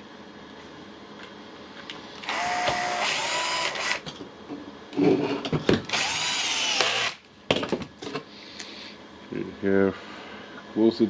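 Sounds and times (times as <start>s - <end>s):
impact wrench motor whine: 2.2s - 4.1s, 5.8s - 7.2s.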